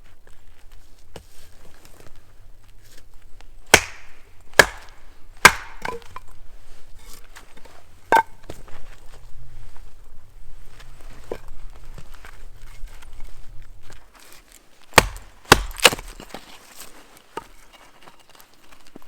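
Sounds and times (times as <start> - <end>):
axe chopping wood: 3.7 - 6.3, 14.9 - 16.2
wood knocking and cracking: 3.7 - 6.3, 14.9 - 16.5.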